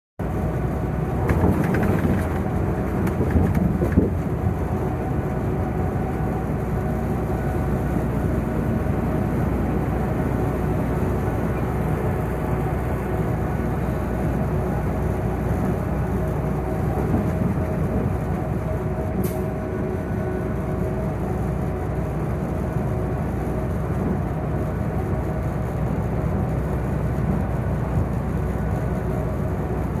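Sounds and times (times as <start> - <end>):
road and wind noise: 0.2 - 30.0
truck engine drone: 0.2 - 30.0.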